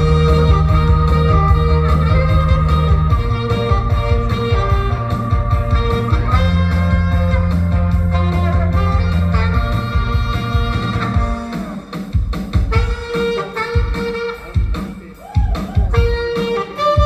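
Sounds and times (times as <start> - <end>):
backing track with guitar and beat: 0.0 - 17.0
saxophone playing pop tune: 0.0 - 17.0.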